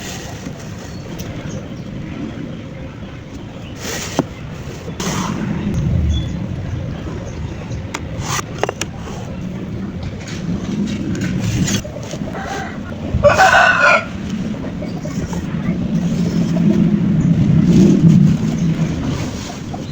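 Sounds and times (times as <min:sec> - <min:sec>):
steady low rumble: 0:04.3 - 0:19.9
rooster crowing: 0:12.4 - 0:14.2.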